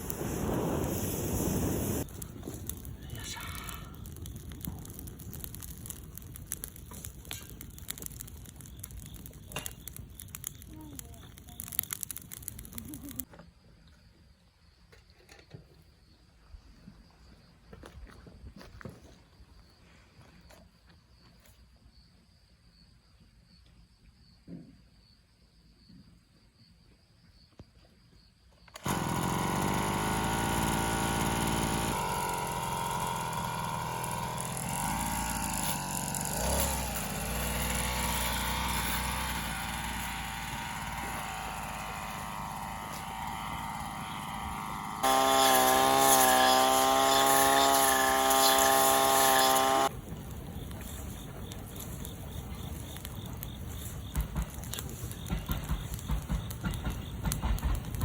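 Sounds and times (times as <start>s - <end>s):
brush cutter engine running: 0.0s - 13.2s, 28.7s - 58.0s.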